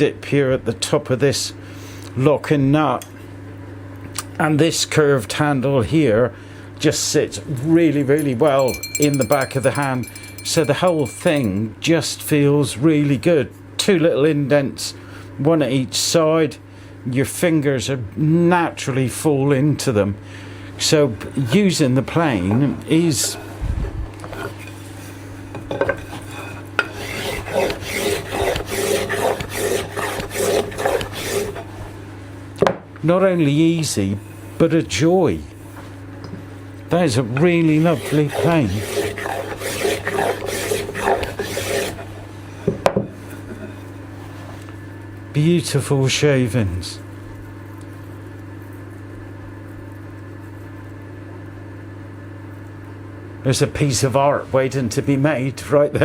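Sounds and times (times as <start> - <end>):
block plane rasping across wood: 26.8 - 31.6, 37.8 - 42.1.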